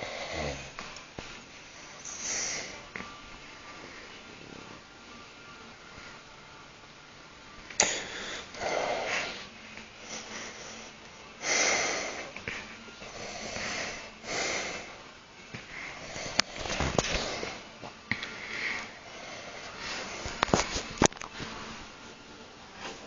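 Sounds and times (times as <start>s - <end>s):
person snoring: 0.0s - 0.8s.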